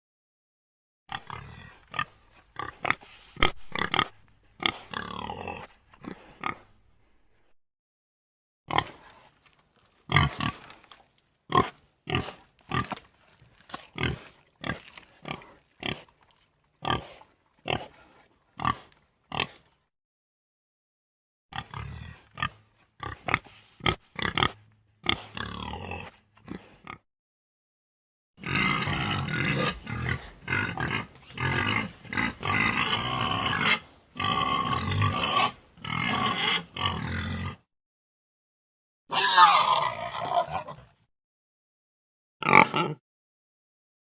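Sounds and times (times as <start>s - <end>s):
warthog grunting: 1.1s - 6.8s, 13.9s - 16.2s, 28.4s - 37.7s.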